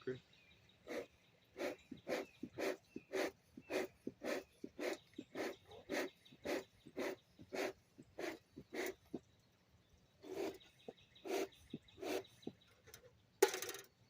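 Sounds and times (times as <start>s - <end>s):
bellows puffs of air: 0.8s - 9.2s, 10.2s - 12.5s.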